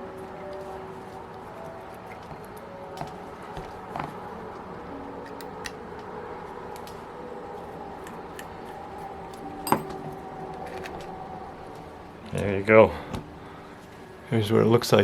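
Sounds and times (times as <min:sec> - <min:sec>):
faint steady hum: 0:00.0 - 0:15.0
sharp metallic clink: 0:09.6 - 0:10.0.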